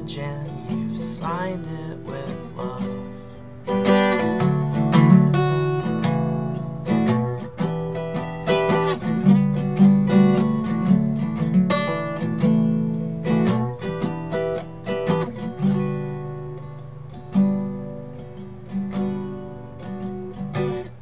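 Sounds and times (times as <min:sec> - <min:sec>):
acoustic guitar strumming chords: 0:00.0 - 0:21.0.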